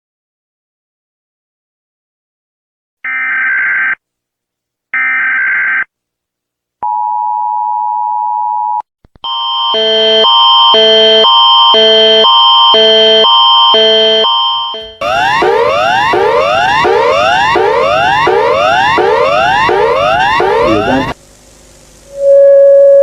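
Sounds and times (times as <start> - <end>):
alternating multi-tone alarm: 9.2 - 21.2
two-tone attention signal: 9.3 - 21.2, 22.1 - 23.0
screechy digital data tones: 14.7 - 21.2.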